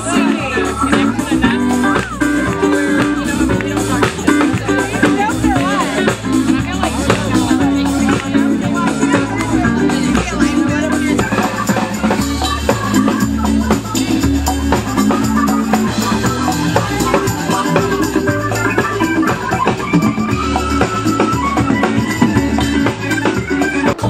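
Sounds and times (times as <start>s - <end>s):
bass line: 0.0s - 24.0s
drum kit beat: 0.0s - 24.0s
guitar: 0.0s - 24.0s
keyboard: 0.0s - 24.0s.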